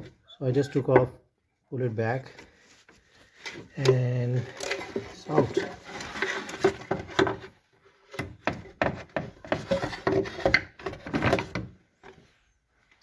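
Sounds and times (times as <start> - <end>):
knocks and clunks of tools: 3.4 - 7.5, 8.1 - 12.2.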